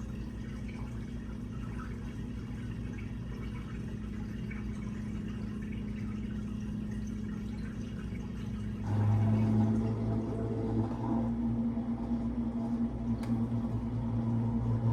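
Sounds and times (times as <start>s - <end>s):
dishwasher pump motor hum: 0.0s - 14.9s
dishwasher water noise: 0.0s - 14.9s.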